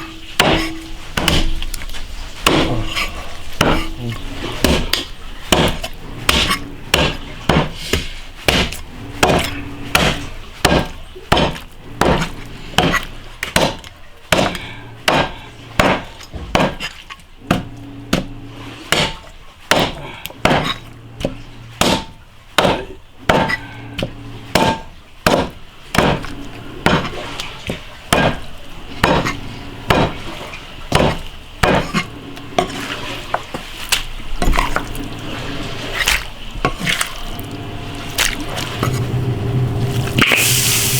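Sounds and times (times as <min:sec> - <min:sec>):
meat cleaver chopping bone: 0:00.0 - 0:39.2.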